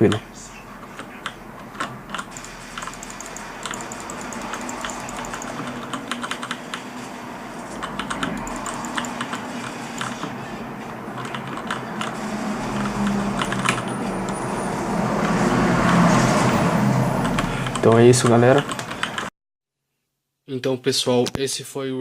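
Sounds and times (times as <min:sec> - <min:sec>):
mechanical keyboard typing: 0:00.8 - 0:06.9, 0:07.8 - 0:10.3, 0:11.1 - 0:14.4, 0:17.2 - 0:19.3.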